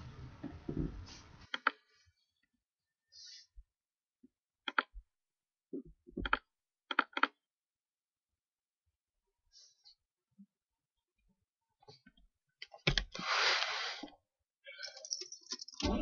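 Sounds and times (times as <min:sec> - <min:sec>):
steady noise: 0:00.0 - 0:01.5
sharp clicks: 0:04.6 - 0:04.9.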